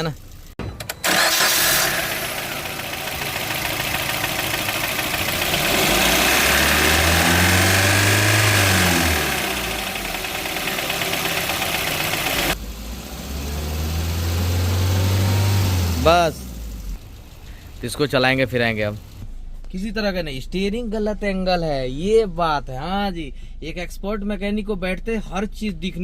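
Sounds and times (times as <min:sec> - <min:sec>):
car engine idling and revving: 0:00.0 - 0:19.8.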